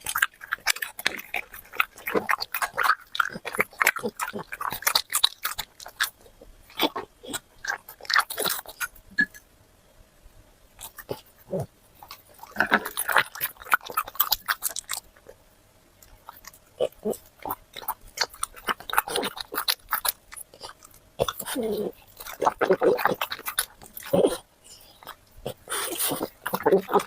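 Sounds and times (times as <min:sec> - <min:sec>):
dog chewing and crunching: 0:00.0 - 0:09.4, 0:10.8 - 0:15.4, 0:16.0 - 0:27.0.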